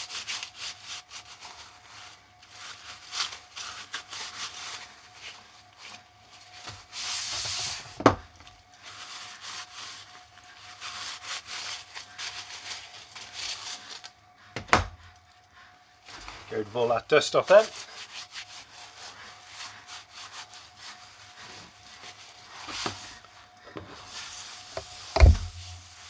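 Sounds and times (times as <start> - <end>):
rubbing strokes: 24.7 - 26.0.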